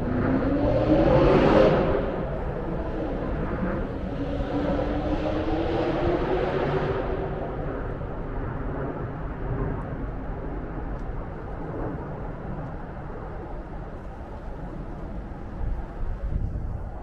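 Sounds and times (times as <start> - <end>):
vehicle engine passing: 0.0 - 7.6
traffic rumble: 0.0 - 17.0.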